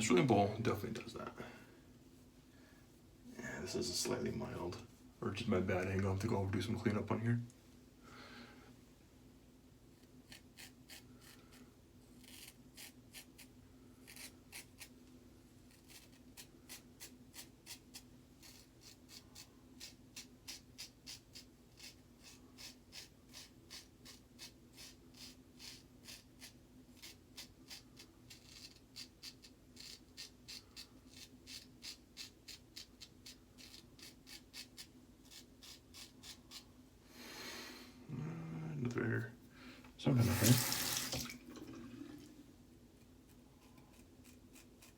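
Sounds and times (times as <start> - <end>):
razor scraping stubble: 10.0 - 11.6, 12.2 - 14.9, 15.7 - 36.7, 43.3 - 44.9.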